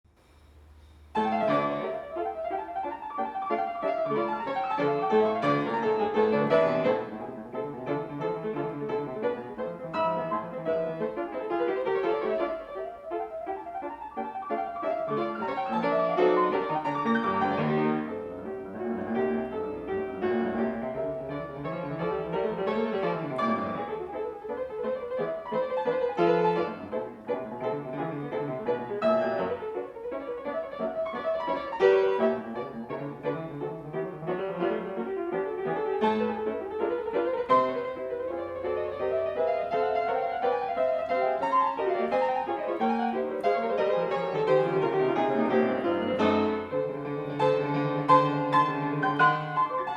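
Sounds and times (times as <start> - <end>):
classical piano piece: 0.1 - 49.9.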